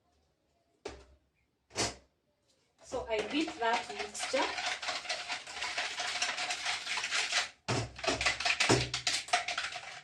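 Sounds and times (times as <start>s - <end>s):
utensil beating mixture in bowl: 2.9s - 10.0s.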